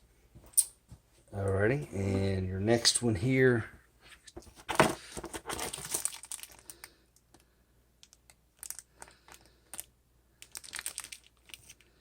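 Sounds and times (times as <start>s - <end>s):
plastic packaging rustling and clicking: 4.3s - 7.4s, 8.0s - 12.0s.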